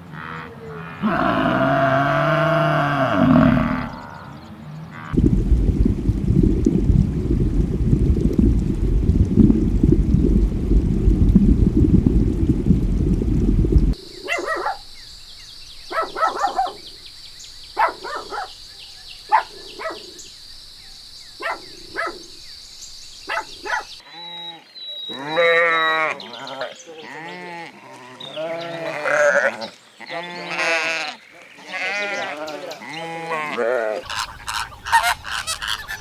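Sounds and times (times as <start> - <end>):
goats or sheep bleating: 0.1 - 4.2, 24.0 - 34.2
low rumble: 5.2 - 14.0.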